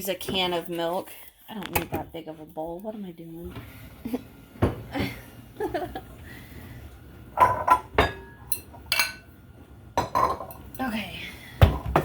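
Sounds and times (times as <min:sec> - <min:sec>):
bowls and dishes clinking: 0:07.4 - 0:09.4, 0:10.0 - 0:10.9.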